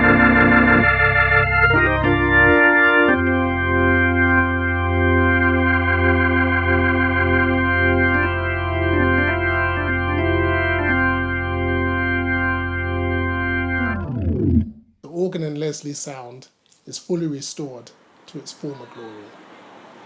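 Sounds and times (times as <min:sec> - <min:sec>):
organ chord: 0:00.0 - 0:14.9.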